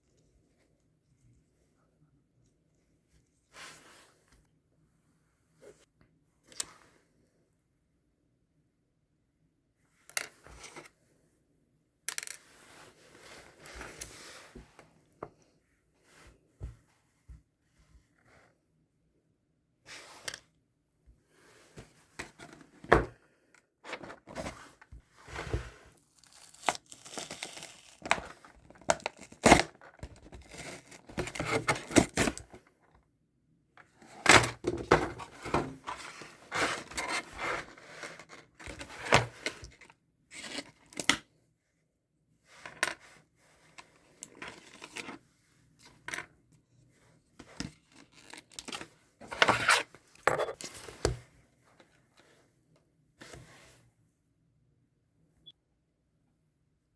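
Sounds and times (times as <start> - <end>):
paper tearing and crumpling: 26.2 - 28.2.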